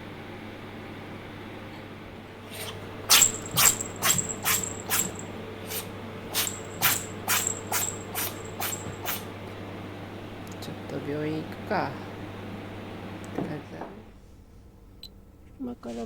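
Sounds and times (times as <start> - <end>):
kitten sneezing: 2.5 - 9.3.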